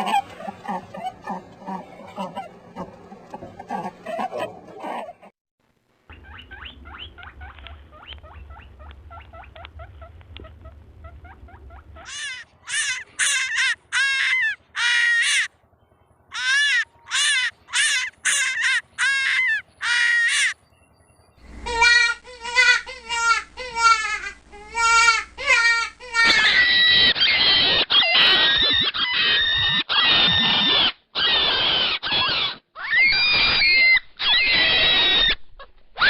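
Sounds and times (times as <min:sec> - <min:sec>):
loud harsh animal calls: 0:00.0 - 0:05.3, 0:06.1 - 0:15.5, 0:16.2 - 0:20.6, 0:21.4 - 0:36.0
soft rapid animal calls: 0:00.0 - 0:05.3, 0:06.1 - 0:15.5, 0:21.4 - 0:36.0
low hum: 0:00.0 - 0:18.2, 0:20.6 - 0:26.6.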